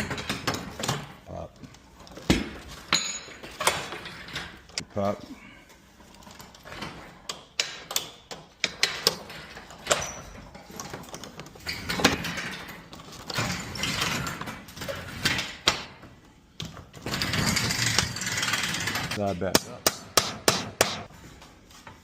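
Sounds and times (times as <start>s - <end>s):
metallic clicks and knocks: 6.6s - 15.9s.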